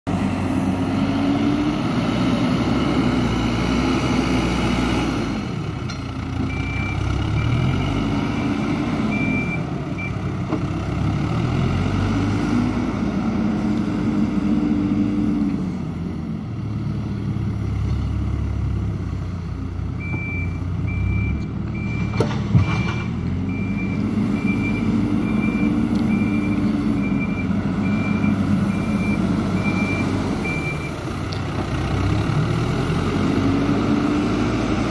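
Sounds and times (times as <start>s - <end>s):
heavy vehicle engine: 0.0s - 34.9s
reversing beeper: 6.5s - 10.2s, 20.0s - 31.0s.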